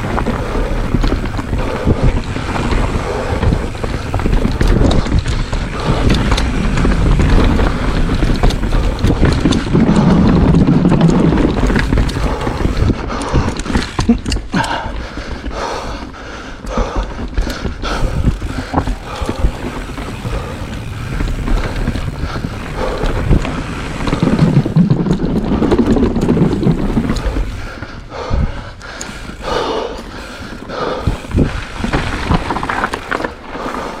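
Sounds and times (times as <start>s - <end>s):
wind buffeting microphone: 0.0s - 16.0s, 16.6s - 34.0s
bike knocks and rattles: 0.0s - 16.1s, 16.8s - 27.9s, 29.1s - 34.0s
tyres rumbling on dirt and rocks: 0.0s - 34.0s.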